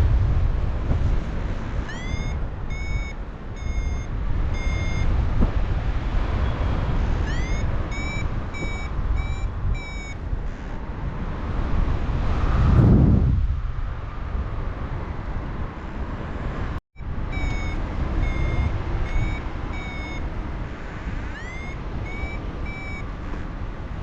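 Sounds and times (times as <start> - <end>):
wind rushing over microphone: 0.0 - 24.0
variometer rising chirp: 1.8 - 5.6, 6.4 - 10.8, 17.2 - 23.5
variometer short beeps: 1.8 - 5.6, 6.4 - 10.8, 17.3 - 20.3, 21.3 - 23.1.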